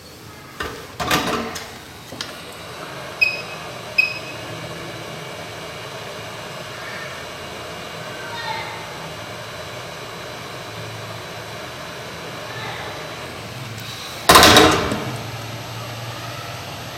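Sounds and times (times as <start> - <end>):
hot air blowing: 0.3 - 16.9
short electronic beeps: 3.2 - 4.4.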